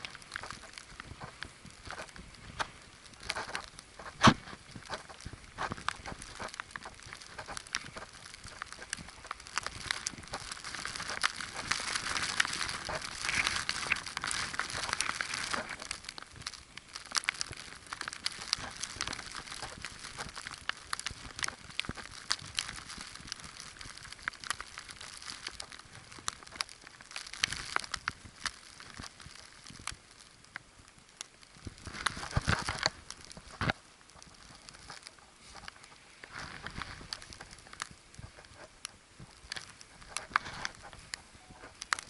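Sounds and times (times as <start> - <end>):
footsteps crunching through snow: 0.0 - 16.0.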